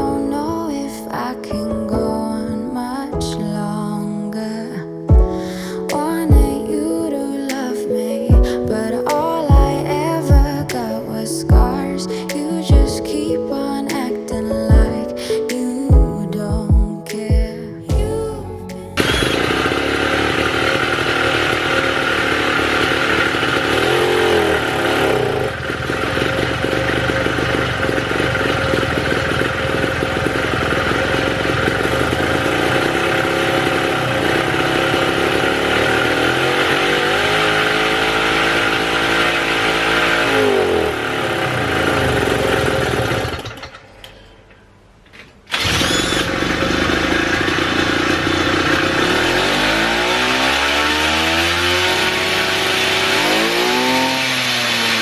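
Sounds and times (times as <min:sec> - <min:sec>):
moped engine revving: 0:19.0 - 0:43.9, 0:45.5 - 0:55.0.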